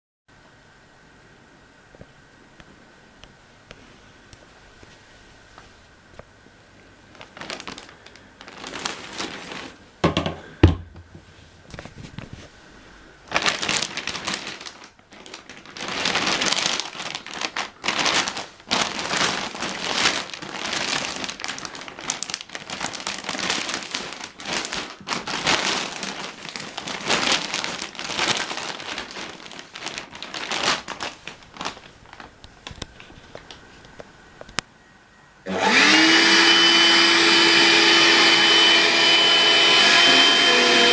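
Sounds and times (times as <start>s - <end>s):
plastic bag crinkling: 7.0s - 10.6s, 11.6s - 34.5s.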